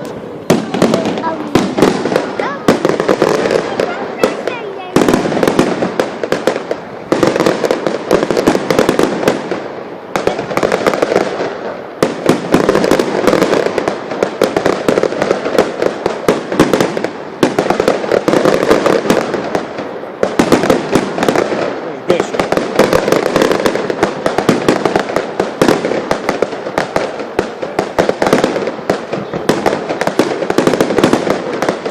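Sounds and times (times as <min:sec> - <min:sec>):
fireworks bangs and crackles: 0:00.0 - 0:31.9.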